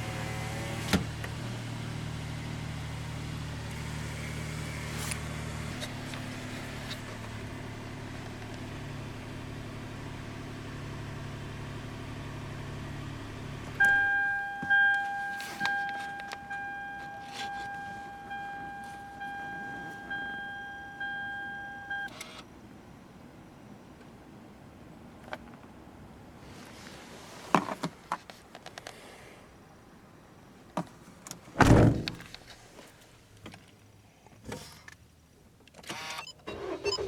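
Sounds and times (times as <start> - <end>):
car engine idling: 1.1 - 22.1
car warning chime dinging: 13.8 - 22.2.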